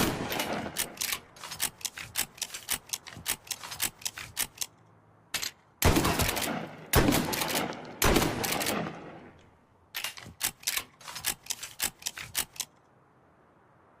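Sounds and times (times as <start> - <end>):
loud shotgun shots: 0.0 - 0.8, 5.8 - 9.3
sharp mechanical clicks: 0.0 - 4.9, 5.8 - 12.9.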